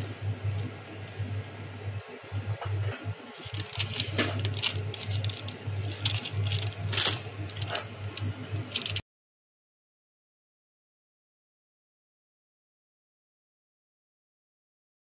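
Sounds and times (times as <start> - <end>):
low steady hum: 0.0 - 9.0.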